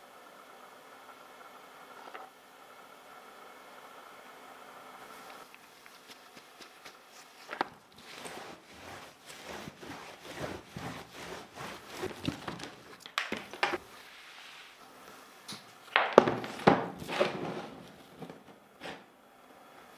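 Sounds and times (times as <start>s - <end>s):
rubbing strokes on keyboard: 5.1s - 14.8s
sharp scrapes: 6.3s - 14.8s.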